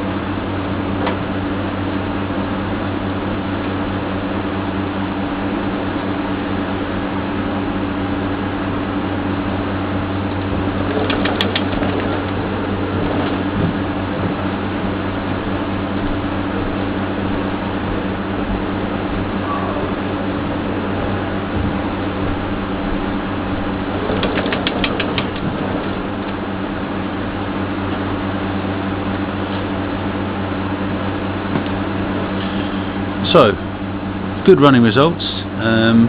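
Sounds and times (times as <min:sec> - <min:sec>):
machine hum: 0:00.0 - 0:36.0
sharp clicks: 0:24.2 - 0:25.5.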